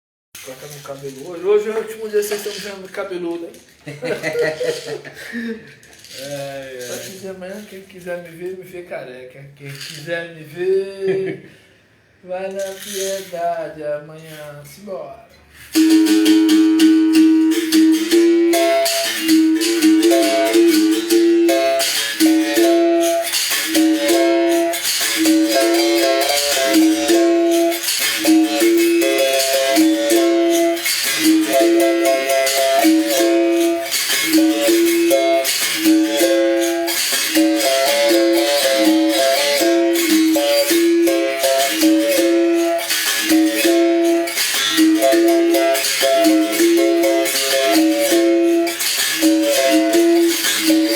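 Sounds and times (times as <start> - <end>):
berimbau played in rhythm: 0.4 - 7.8, 15.6 - 50.9
shaker rattle: 0.4 - 7.9, 9.7 - 10.1, 12.5 - 13.6, 15.5 - 50.9.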